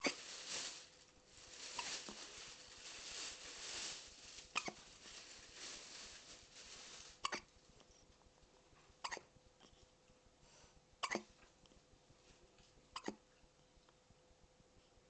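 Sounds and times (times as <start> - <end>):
hiccups: 4.6 - 4.8, 7.2 - 7.5, 9.0 - 9.3, 11.0 - 11.4, 13.0 - 13.2.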